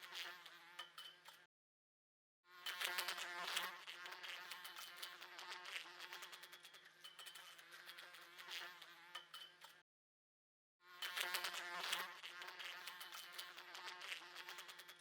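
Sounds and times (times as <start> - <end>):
fly buzzing against glass: 0.0 - 1.5, 2.5 - 9.8, 10.8 - 15.0.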